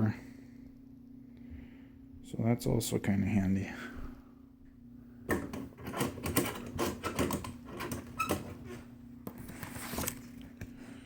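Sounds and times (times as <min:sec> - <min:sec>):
steady low hum: 0:00.0 - 0:11.0
light fixture clicking and rattling: 0:05.3 - 0:08.8.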